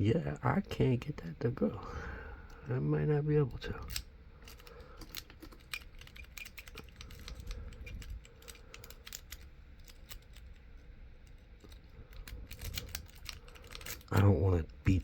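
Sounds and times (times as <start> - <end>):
lock pick clicking in padlock: 3.9 - 10.7, 11.3 - 14.2.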